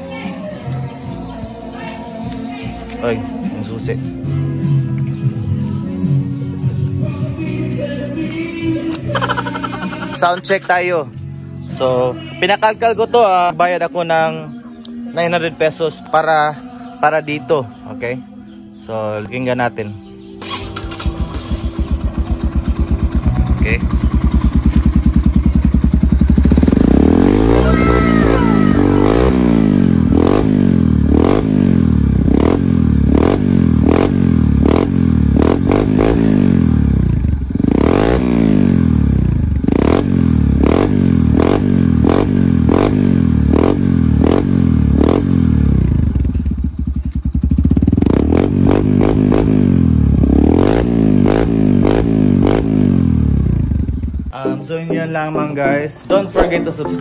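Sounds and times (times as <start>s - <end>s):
motorcycle engine revving: 20.4s - 54.4s.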